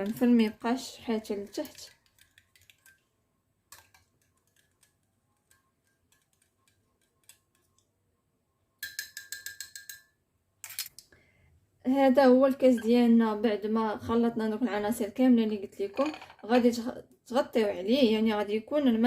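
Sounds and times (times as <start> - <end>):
teaspoon clinking in a glass: 8.8 - 10.1.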